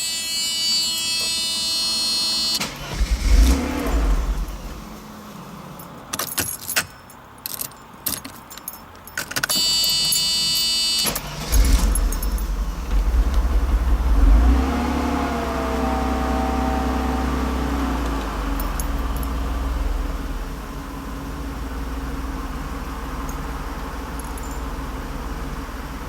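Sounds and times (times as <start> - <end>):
starter motor whine: 0.0 - 4.9, 9.5 - 19.2
car engine running: 2.6 - 6.0, 11.2 - 26.0
key clicks and rattles: 5.8 - 12.6, 18.2 - 19.4, 24.1 - 24.7.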